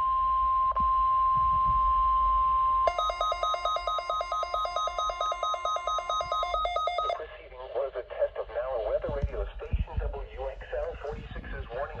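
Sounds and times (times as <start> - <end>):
buzzy two-pitch alarm beeping: 0.0 - 7.2
steady high alarm tone: 1.1 - 7.2.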